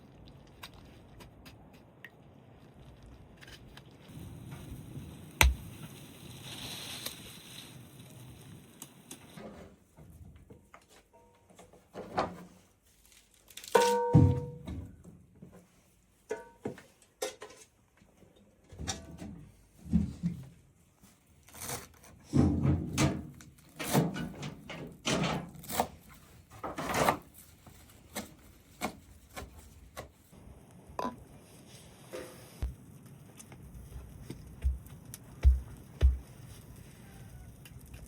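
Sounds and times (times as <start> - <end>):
rustling: 2.5 - 9.8, 12.4 - 13.9, 25.6 - 38.0
knocks and thuds: 34.6 - 36.3
deep thumps: 34.6 - 36.4.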